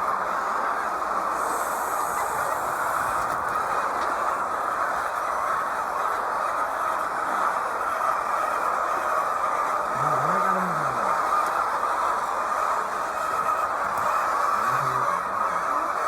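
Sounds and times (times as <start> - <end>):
steady mechanical noise: 1.2 - 4.8.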